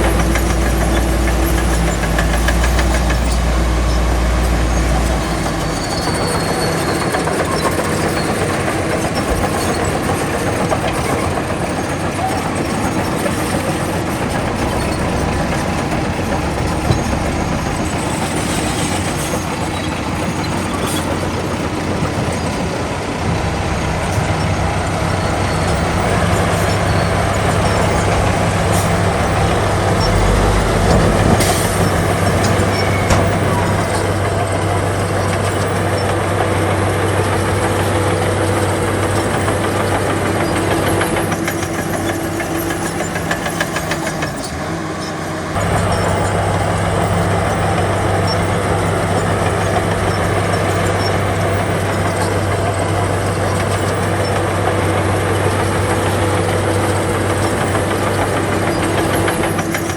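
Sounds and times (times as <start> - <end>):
diesel machinery engine running: 0.0 - 59.9
deep even hum: 23.2 - 35.1.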